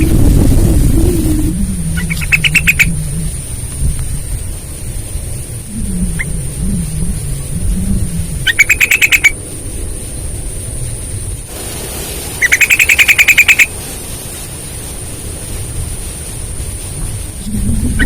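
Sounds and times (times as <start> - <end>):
bird singing rolling trills: 0.0 - 3.5, 5.2 - 11.0, 12.4 - 13.7.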